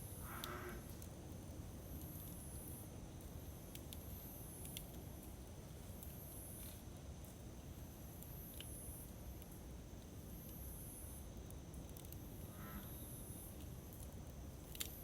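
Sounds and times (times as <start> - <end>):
insect buzzing call: 0.2 - 0.8
campfire burning and crackling: 0.9 - 12.4, 13.4 - 15.0.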